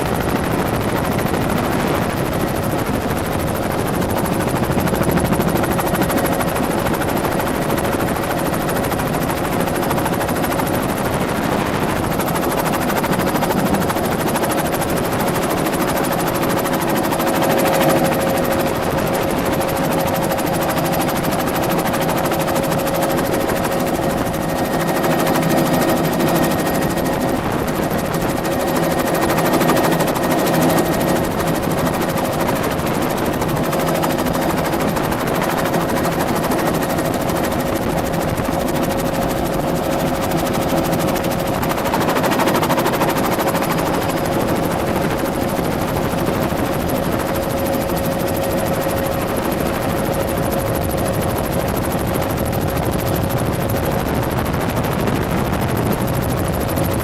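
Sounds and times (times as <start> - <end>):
constant engine whine: 0.0 - 57.0
helicopter rotor and turbine drone: 0.0 - 57.0.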